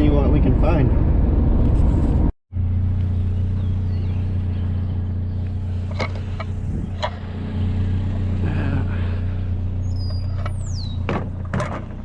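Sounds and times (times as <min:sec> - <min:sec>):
truck engine and road drone: 0:00.0 - 0:12.0.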